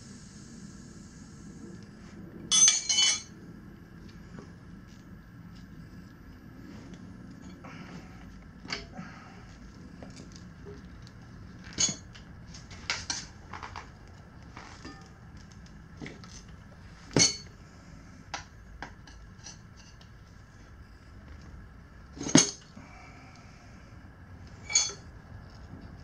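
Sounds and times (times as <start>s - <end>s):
tire irons clanking on rim: 22.2s - 22.7s, 24.6s - 25.1s.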